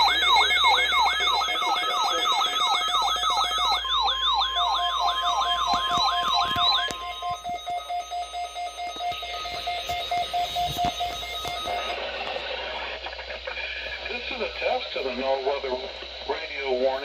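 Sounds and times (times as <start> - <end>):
siren-like alarm sweep: 0.0 - 12.4
rapid beeping: 0.0 - 17.0.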